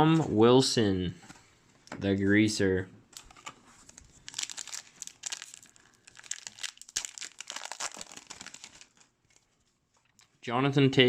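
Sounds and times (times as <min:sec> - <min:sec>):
foil wrapper crinkling and tearing: 0:03.2 - 0:09.5.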